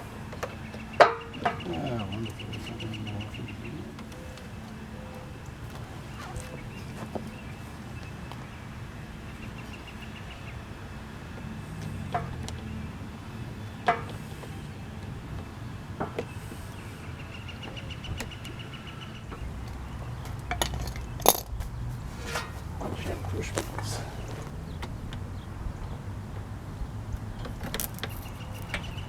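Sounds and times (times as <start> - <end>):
metallic clinks and knocks: 20.3 - 22.7.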